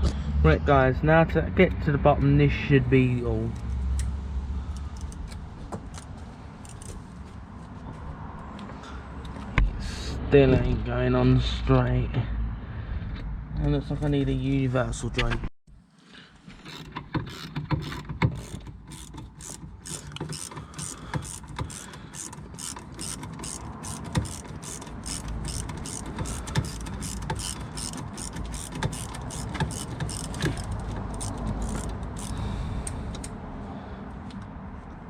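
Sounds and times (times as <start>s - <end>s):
socket ratchet clicking: 4.7s - 7.0s, 16.7s - 33.4s.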